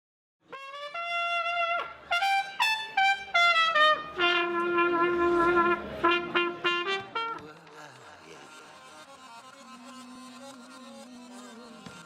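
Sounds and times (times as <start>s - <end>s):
trumpet melody: 0.4s - 7.5s
quiet lower accompaniment: 0.6s - 10.6s.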